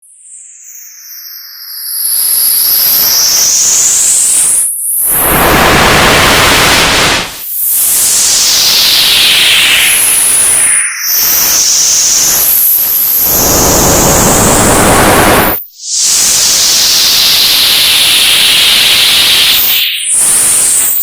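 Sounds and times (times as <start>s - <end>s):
high whistling tones: 0.6s - 21.0s.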